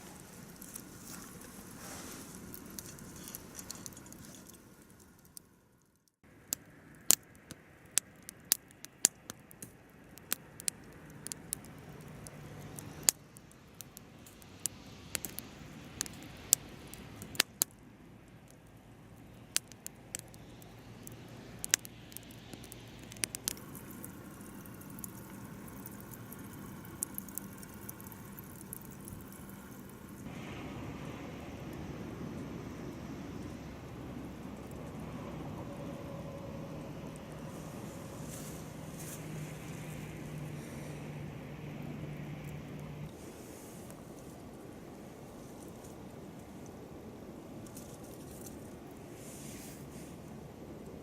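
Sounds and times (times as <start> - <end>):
campfire crackling: 0.0 - 51.0.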